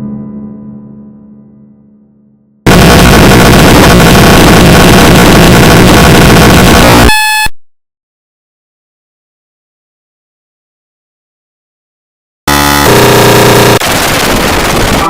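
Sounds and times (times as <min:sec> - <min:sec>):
loud distorted noise blast: 0:02.7 - 0:07.5, 0:12.5 - 0:15.0
high buzzing tone: 0:02.7 - 0:07.6, 0:12.5 - 0:14.6.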